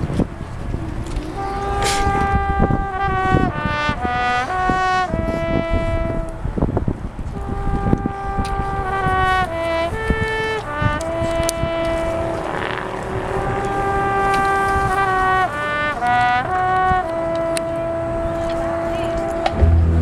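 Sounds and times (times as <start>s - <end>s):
brass band holding chords: 0.0s - 20.0s
drum hits: 19.5s - 20.0s.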